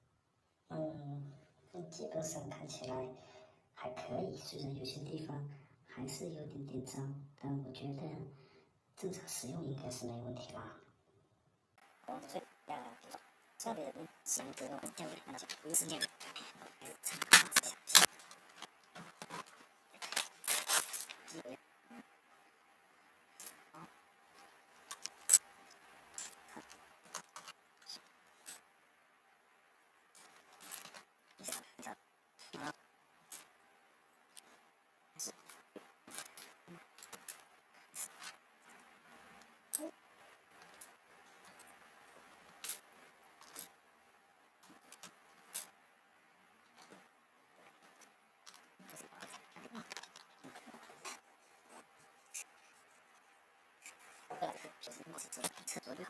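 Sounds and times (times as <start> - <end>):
plastic keyboard parts clattering: 17.1 - 21.2.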